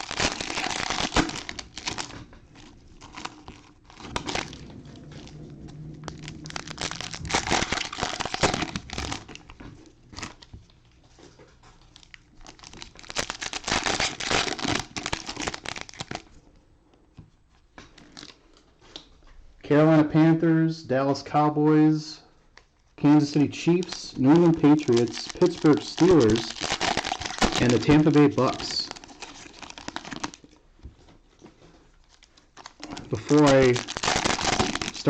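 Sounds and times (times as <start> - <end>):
cellophane wrappers crinkling and tearing: 0.0 - 16.4, 23.2 - 30.6, 31.3 - 35.0.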